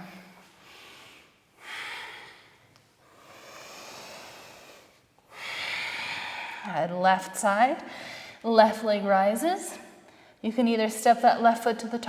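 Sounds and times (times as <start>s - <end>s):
woman breathing with effort: 0.0s - 6.7s, 7.9s - 8.4s.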